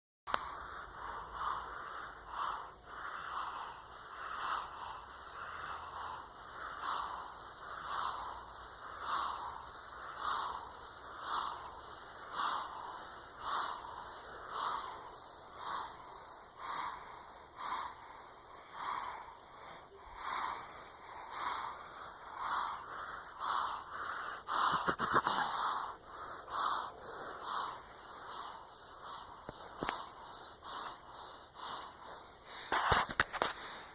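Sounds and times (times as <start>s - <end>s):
baby snoring: 0.3s - 33.6s
scratchy sound: 24.7s - 25.5s, 32.6s - 33.7s.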